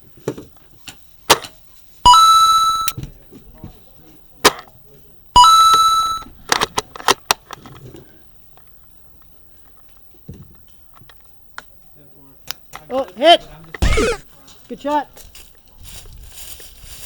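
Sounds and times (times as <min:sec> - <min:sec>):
airsoft rifle shots: 0:13.8 - 0:14.2.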